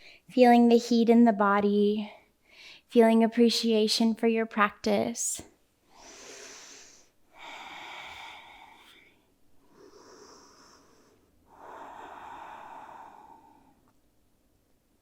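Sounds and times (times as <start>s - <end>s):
slow deep breathing: 5.9s - 14.0s.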